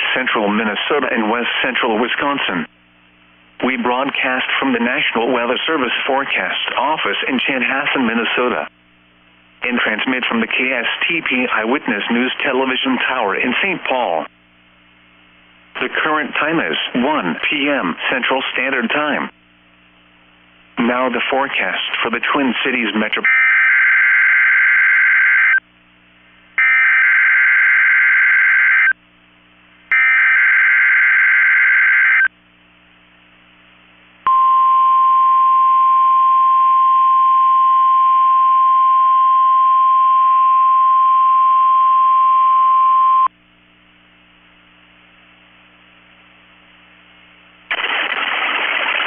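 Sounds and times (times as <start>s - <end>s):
steady warning alarm tone: 26.6s - 29.0s, 29.9s - 32.3s.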